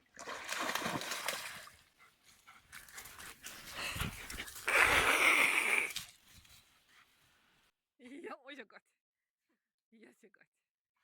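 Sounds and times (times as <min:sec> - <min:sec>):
dog splashing through water: 0:00.0 - 0:01.9.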